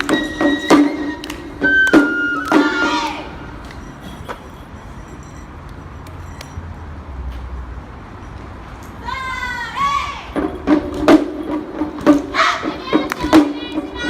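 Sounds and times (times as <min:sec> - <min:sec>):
pitched musical notes: 0:00.0 - 0:03.5
murmur of outdoor audience: 0:00.0 - 0:14.0
sharp percussive hits: 0:10.3 - 0:14.0.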